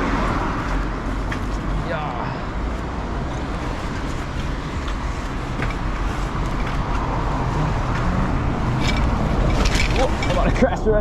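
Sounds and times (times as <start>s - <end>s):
wind and road noise on bicycle: 0.0s - 11.0s.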